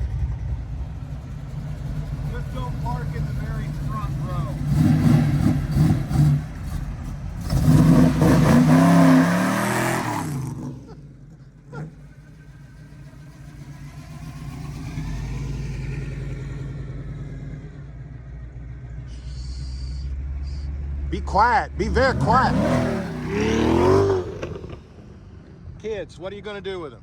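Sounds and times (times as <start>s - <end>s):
low engine rumble: 0.0s - 9.2s, 10.2s - 27.0s
car engine accelerating: 0.0s - 27.0s.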